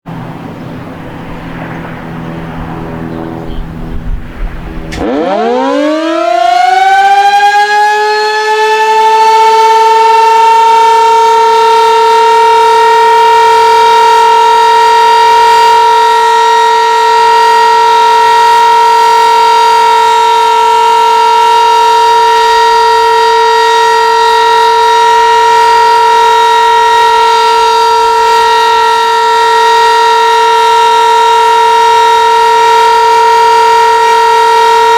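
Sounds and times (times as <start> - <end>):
low rumbling noise: 0.1 - 5.5
tornado siren winding up: 0.2 - 34.9.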